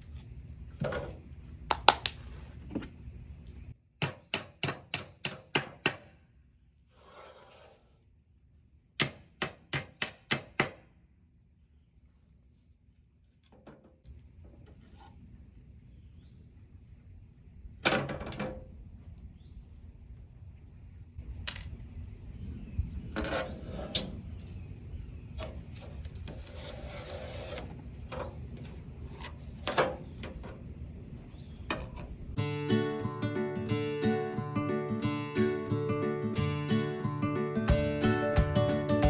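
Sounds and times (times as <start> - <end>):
tool scraping wood: 6.9 - 8.0, 23.2 - 24.2, 25.4 - 30.6.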